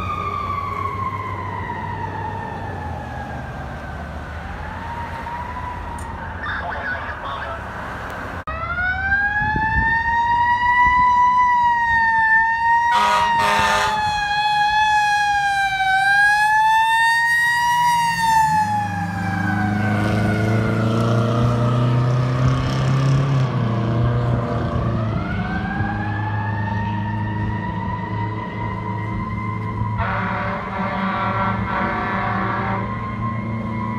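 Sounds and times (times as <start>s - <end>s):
mechanical siren wailing: 0.0s - 7.2s, 8.5s - 21.0s, 24.7s - 33.9s
air horn blast: 12.9s - 14.2s, 30.0s - 33.0s.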